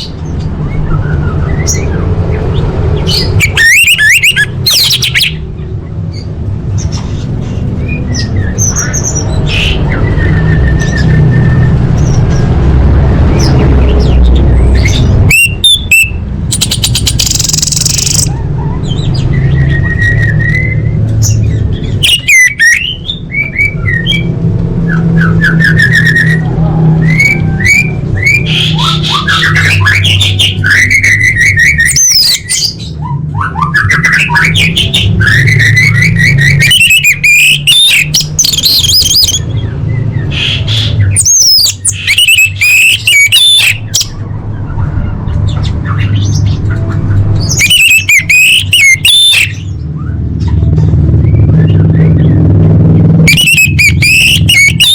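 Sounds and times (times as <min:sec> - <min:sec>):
steady low rumble: 0:04.4 - 0:15.3, 0:49.5 - 0:54.8
thrush singing: 0:07.7 - 0:50.3, 0:51.1 - 0:54.9.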